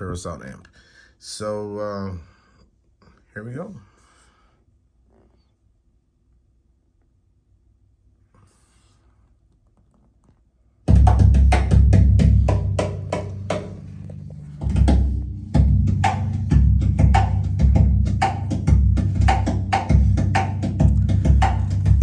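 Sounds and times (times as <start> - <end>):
music with heavy bass: 10.9 - 22.0.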